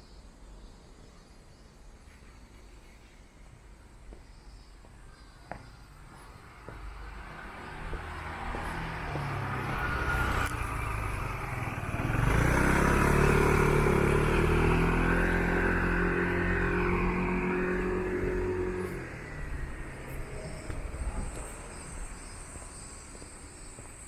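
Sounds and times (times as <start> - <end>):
vehicle motor hum passing: 6.7 - 24.0.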